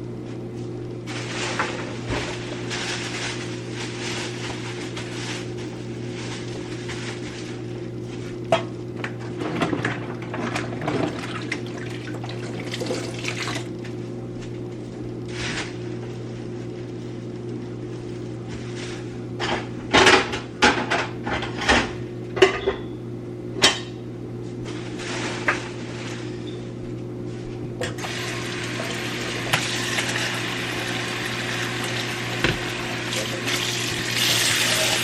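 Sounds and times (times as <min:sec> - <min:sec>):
tap water running: 0:10.8 - 0:13.8, 0:27.8 - 0:35.0
dishes clattering in sink: 0:28.8 - 0:35.0.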